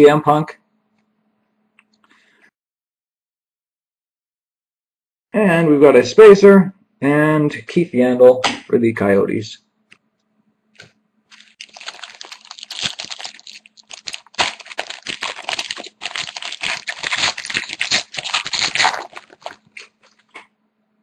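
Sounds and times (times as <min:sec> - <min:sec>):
foil wrapper crinkling and tearing: 0:11.3 - 0:20.4.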